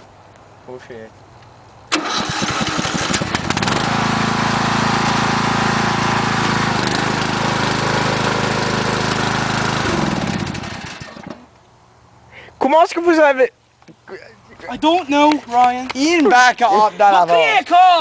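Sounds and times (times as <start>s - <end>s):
lawnmower engine running: 1.9s - 11.5s.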